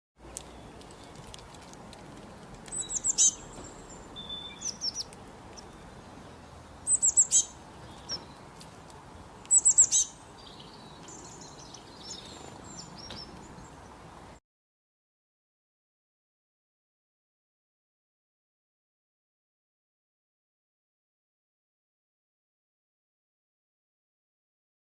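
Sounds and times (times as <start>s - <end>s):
songbird singing: 0.2s - 1.5s, 2.1s - 14.4s
bird chirps: 2.7s - 8.5s, 9.5s - 14.0s.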